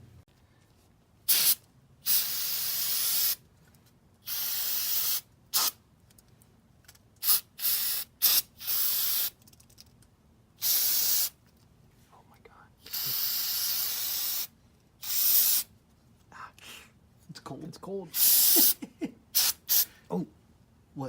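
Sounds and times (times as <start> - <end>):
aerosol spray bursts: 1.3 - 3.4, 4.2 - 5.8, 7.2 - 9.4, 10.6 - 11.4, 12.9 - 15.7, 18.2 - 18.8, 19.4 - 19.9.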